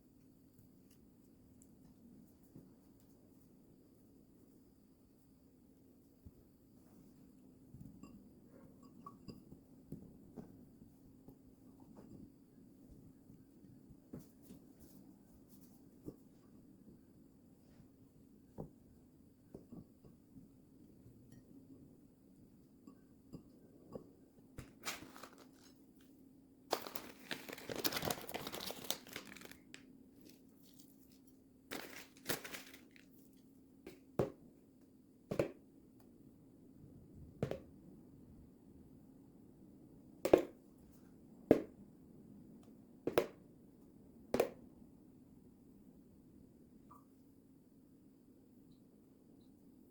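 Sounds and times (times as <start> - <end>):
wrapping crinkling and tearing: 24.7 - 25.8, 26.7 - 33.3.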